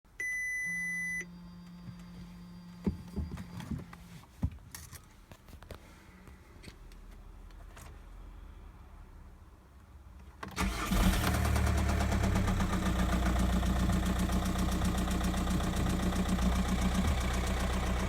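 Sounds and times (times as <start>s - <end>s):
car ignition beep: 0.2s - 3.7s.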